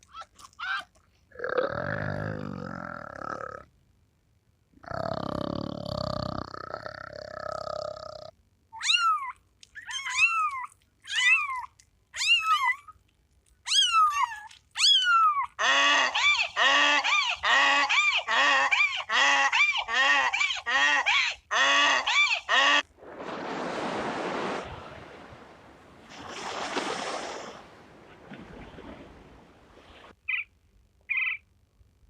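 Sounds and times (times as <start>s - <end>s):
waterfowl nasal calls: 15.6s - 23.3s.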